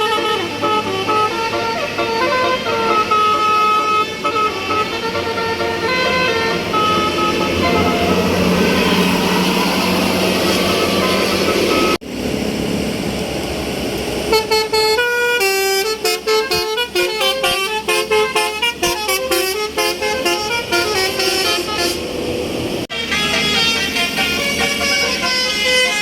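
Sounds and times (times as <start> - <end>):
musical air horn tune: 0.0 - 12.0, 14.3 - 22.2, 22.9 - 26.0
bus engine and road noise: 0.0 - 26.0.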